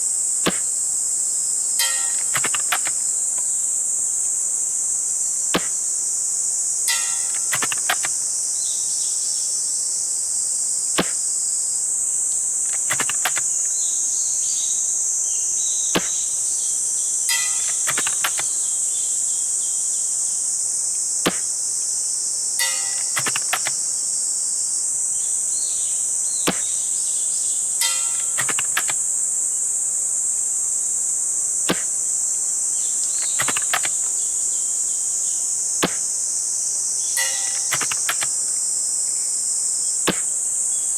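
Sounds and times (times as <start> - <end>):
insects chirping: 0.0 - 40.9
airsoft rifle shot: 0.4 - 0.8, 1.8 - 3.5, 5.5 - 5.9, 6.9 - 8.3, 11.0 - 11.3, 12.7 - 13.5, 16.0 - 16.4, 17.3 - 18.7, 21.2 - 21.6, 22.6 - 23.9, 26.5 - 27.0, 27.8 - 29.1, 31.7 - 32.1, 33.1 - 34.1, 35.8 - 36.2, 37.2 - 38.4, 40.1 - 40.4
rifle bolt clicks: 1.8 - 3.5, 6.9 - 8.2, 12.7 - 13.5, 17.3 - 18.6, 22.6 - 23.9, 27.8 - 29.1, 33.1 - 34.1, 37.2 - 38.4.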